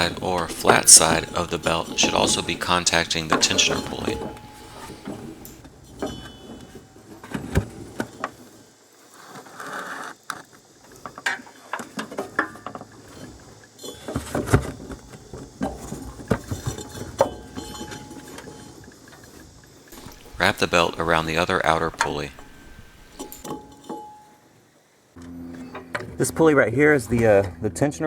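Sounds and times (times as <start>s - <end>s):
drive belt clicking on metal pulleys: 0.0s - 5.6s, 20.0s - 23.5s.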